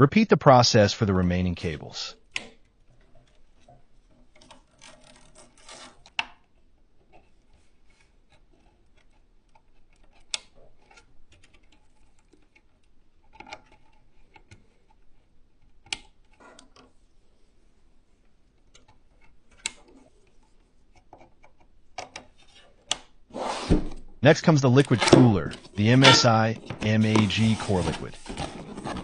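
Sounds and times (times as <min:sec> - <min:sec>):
cables rustling: 0:24.2 - 0:29.0.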